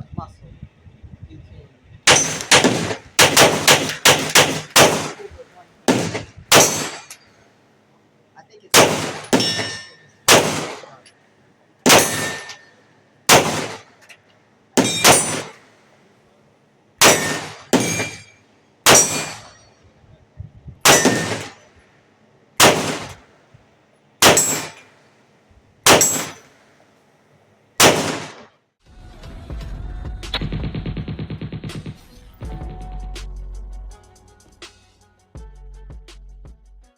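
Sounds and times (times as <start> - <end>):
pistol shots: 2.1 - 7.2, 8.7 - 11.0, 11.9 - 12.7, 13.3 - 14.0, 14.8 - 15.6, 17.0 - 18.3, 18.9 - 19.6, 20.8 - 21.6, 22.6 - 23.2, 24.2 - 24.9, 25.9 - 26.5, 27.8 - 28.5.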